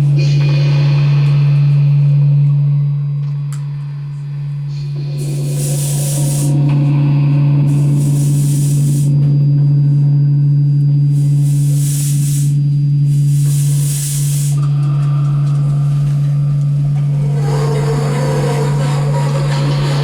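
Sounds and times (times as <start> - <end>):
loud low electronic drone: 0.0 - 20.0
high electronic hiss: 4.6 - 9.5, 10.9 - 20.0.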